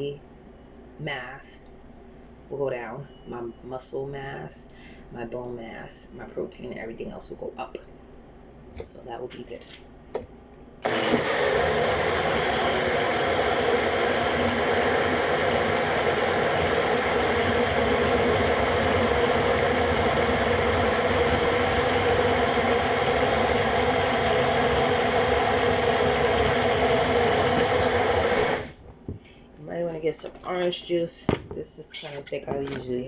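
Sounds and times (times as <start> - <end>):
blender running: 10.8 - 28.8.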